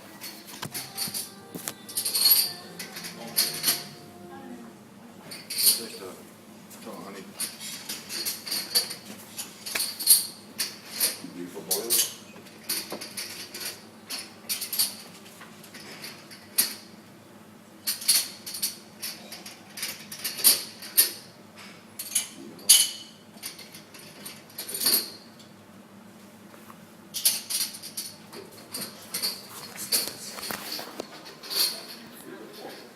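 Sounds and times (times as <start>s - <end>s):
drinking glasses clinking: 0.7s - 4.0s.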